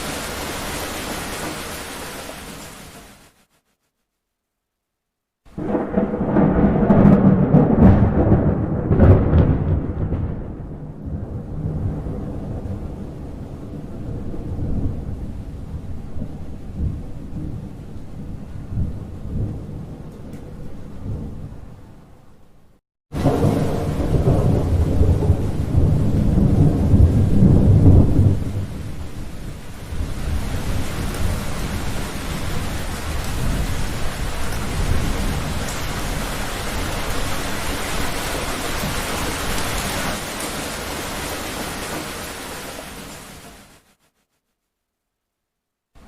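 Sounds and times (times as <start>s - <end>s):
heavy rain hissing: 0.0s - 3.6s, 23.2s - 44.0s
thunder rumbling: 5.5s - 22.0s, 23.1s - 43.2s.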